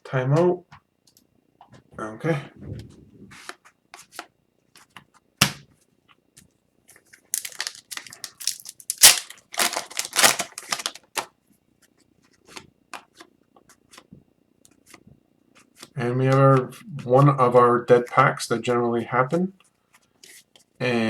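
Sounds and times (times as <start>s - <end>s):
wrapper crinkling and tearing: 7.4s - 11.3s.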